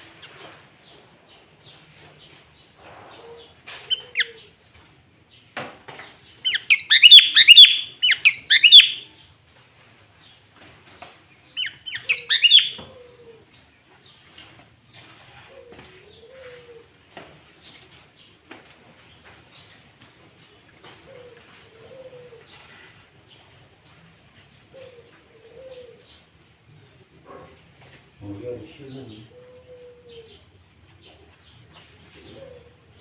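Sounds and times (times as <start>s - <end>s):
soft bird chirps: 6.3s - 9.4s, 11.0s - 14.3s
bulbul singing bright phrases: 6.5s - 9.1s, 11.6s - 12.8s.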